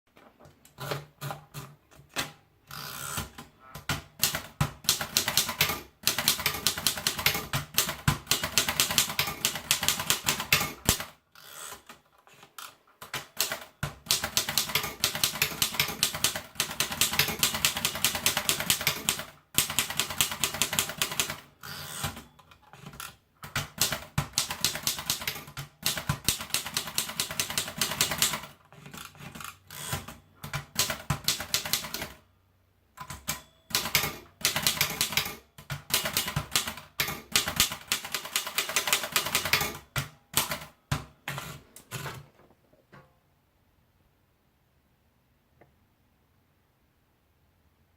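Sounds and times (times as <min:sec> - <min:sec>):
typewriter keys clacking: 0:03.1 - 0:11.1, 0:13.0 - 0:22.2, 0:22.8 - 0:32.2, 0:33.0 - 0:42.2.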